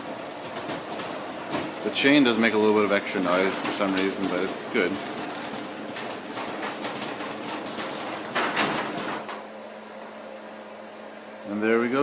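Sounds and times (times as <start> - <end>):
garage door opener chain rattling: 0.6 - 9.3.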